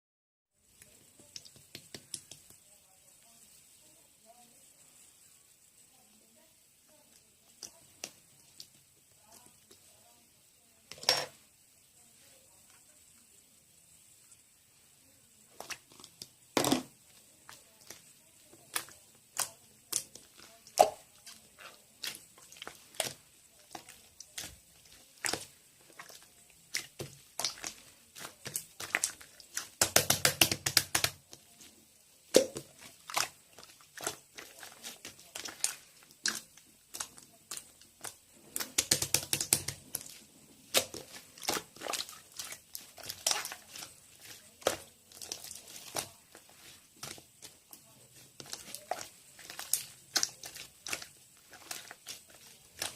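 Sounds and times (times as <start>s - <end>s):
close crackling and crunching: 18.7s - 31.3s, 32.3s - 52.9s.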